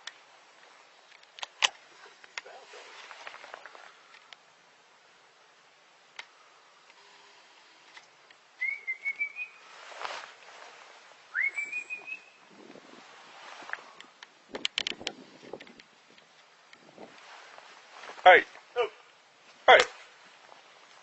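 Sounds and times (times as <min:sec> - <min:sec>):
brief rustle: 0:01.0 - 0:04.4, 0:09.0 - 0:18.7
whistled notes sliding up: 0:08.6 - 0:09.7, 0:11.3 - 0:12.5.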